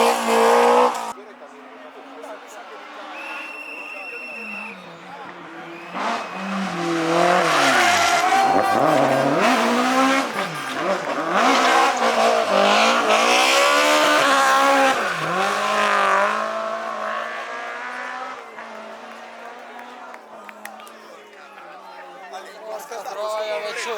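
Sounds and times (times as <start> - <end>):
rally car engine revving: 0.0 - 1.2, 2.6 - 20.2.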